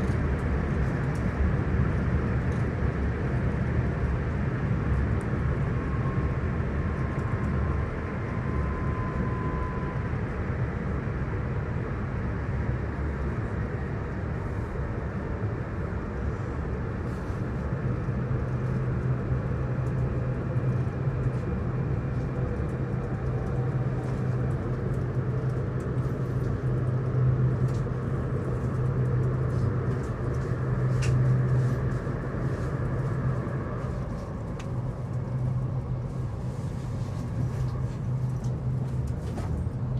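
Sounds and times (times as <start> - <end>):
train cabin rumble: 20.3 - 39.9.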